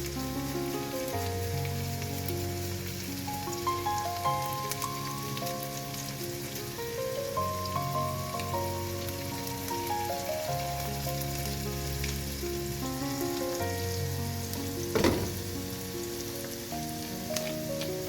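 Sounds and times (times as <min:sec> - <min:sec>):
food sizzling in a pan: 0:00.0 - 0:18.0
slow background music: 0:00.0 - 0:18.0
sharp knock: 0:15.0 - 0:15.6.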